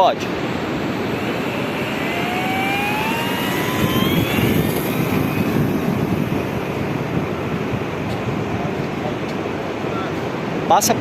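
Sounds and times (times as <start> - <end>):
model plane motor whining: 0.3 - 8.0
wind noise: 0.3 - 9.5.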